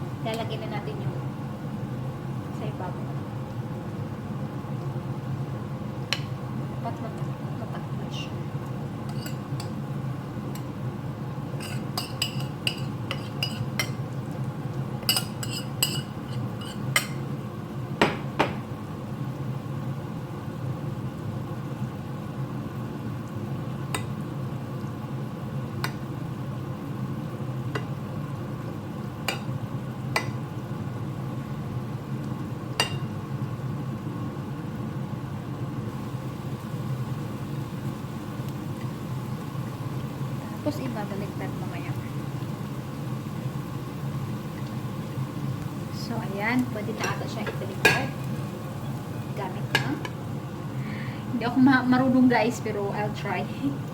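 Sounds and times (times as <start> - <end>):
omelette sizzling in a pan: 0.0 - 53.9
metal utensil clinking on pan: 11.6 - 14.0, 15.1 - 17.2, 47.0 - 48.3.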